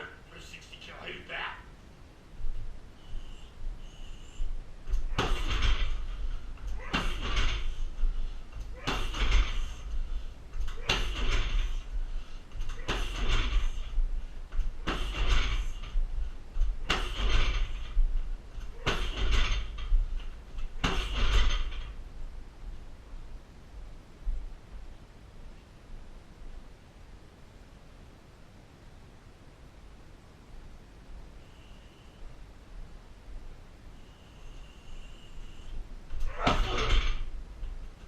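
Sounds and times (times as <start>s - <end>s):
kicks thudding on punching bag: 5.0s - 9.7s, 12.7s - 13.9s, 14.6s - 15.8s, 16.6s - 18.1s, 20.8s - 21.7s, 36.2s - 37.3s.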